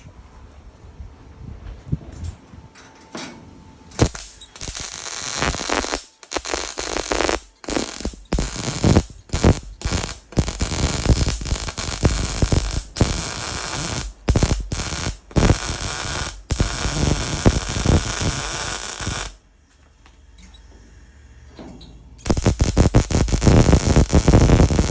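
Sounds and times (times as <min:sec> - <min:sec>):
crackling arc welding: 0:03.9 - 0:19.4, 0:22.2 - 0:24.9.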